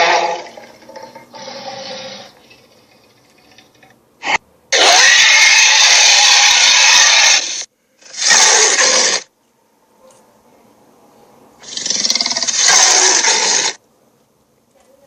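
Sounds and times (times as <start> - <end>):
creature rasping roars: 0.0 - 2.4, 4.3 - 9.2, 11.6 - 13.8.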